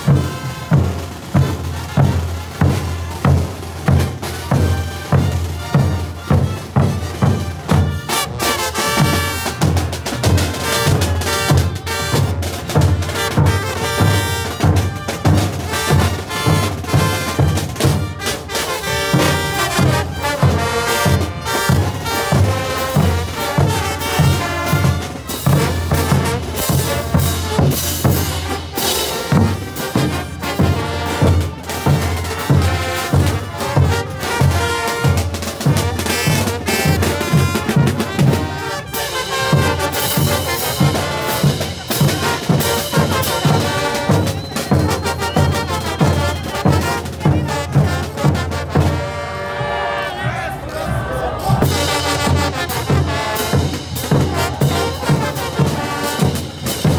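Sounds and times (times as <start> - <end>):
trumpets and trombones: 0.0 - 56.9
bass drum beat: 19.1 - 38.6.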